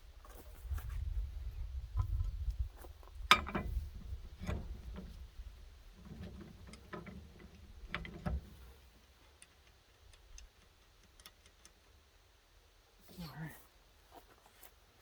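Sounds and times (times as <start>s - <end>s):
faint clicks and knocks: 5.9s - 12.0s.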